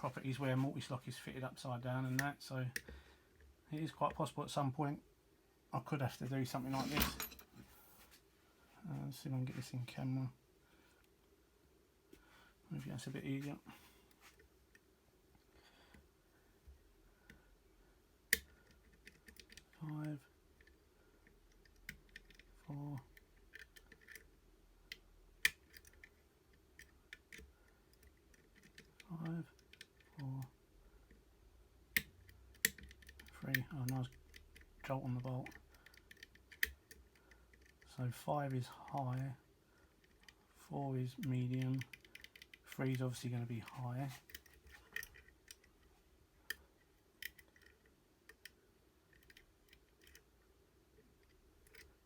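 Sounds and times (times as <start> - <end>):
lock pick clicking: 23.1 - 24.3, 41.7 - 42.7, 47.2 - 50.3
lock pick clicking in lock: 23.2 - 24.3, 47.2 - 48.5.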